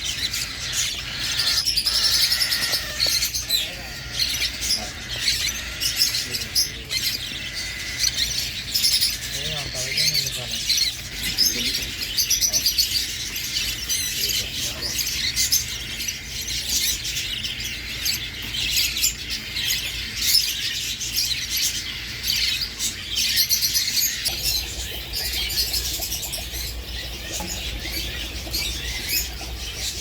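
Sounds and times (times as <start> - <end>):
small birds chirping: 0.0 - 30.0.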